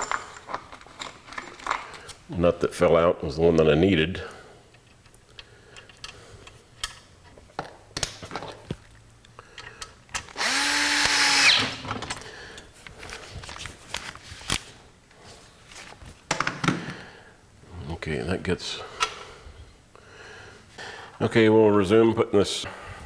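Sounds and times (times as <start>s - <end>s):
power drill running: 10.3s - 11.8s.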